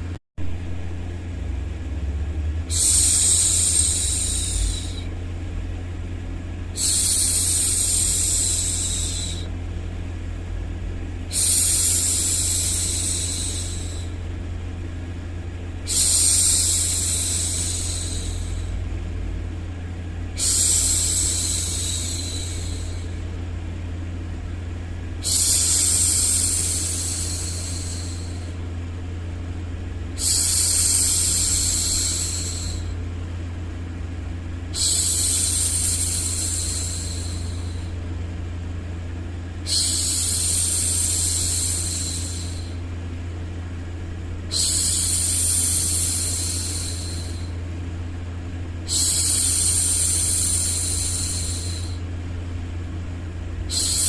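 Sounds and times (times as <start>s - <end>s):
low white noise rumble: 0.0s - 54.0s
woman shushing: 2.7s - 5.1s, 6.8s - 9.5s, 11.3s - 14.2s, 15.9s - 18.8s, 20.4s - 23.2s, 25.2s - 28.6s, 30.2s - 33.0s, 34.8s - 38.0s, 39.7s - 42.8s, 44.5s - 47.5s, 48.9s - 52.0s, 53.7s - 54.0s.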